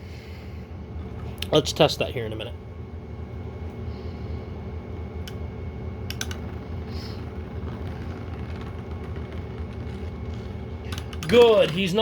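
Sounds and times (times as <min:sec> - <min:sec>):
spinning tops whirring: 0:06.1 - 0:12.0.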